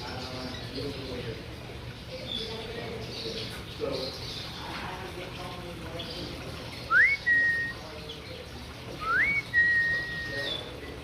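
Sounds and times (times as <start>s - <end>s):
bird whistling: 6.9s - 7.8s, 9.0s - 10.7s.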